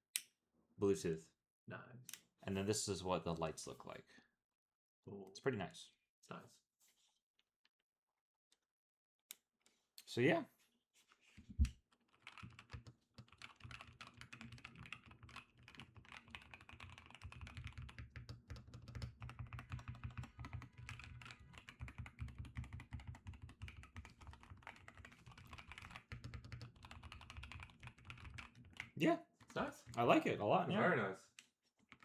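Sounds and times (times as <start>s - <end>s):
keyboard typing clicks: 12.2s - 30.2s.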